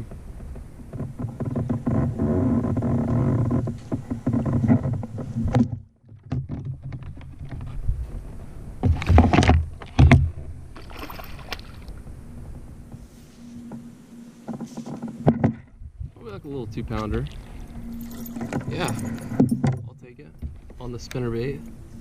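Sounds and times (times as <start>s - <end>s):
water splashing: 10.7s - 12.1s, 16.5s - 19.3s.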